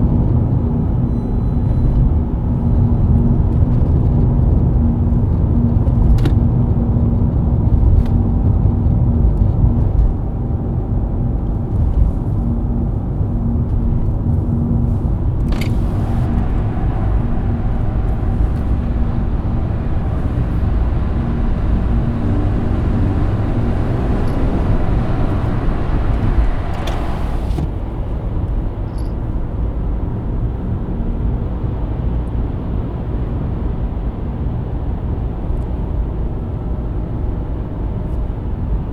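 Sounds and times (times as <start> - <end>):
car engine cruising: 0.1 - 28.1
tyre and road rumble: 2.1 - 28.2
short hissy swells: 15.7 - 27.6.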